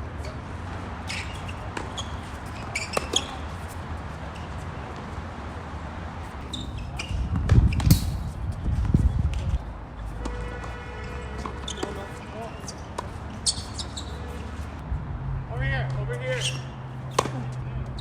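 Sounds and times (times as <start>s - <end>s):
tennis balls struck and bouncing: 1.2s - 3.6s, 7.0s - 14.0s, 17.0s - 17.6s
wind buffeting microphone: 6.7s - 9.8s, 14.8s - 15.6s.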